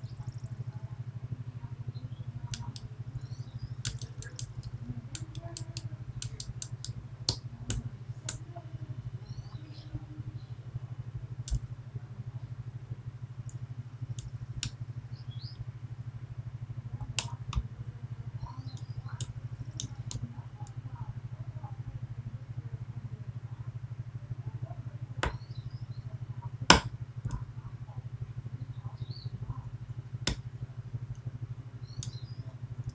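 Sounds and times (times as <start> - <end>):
low pulsing hum: 0.0 - 32.9.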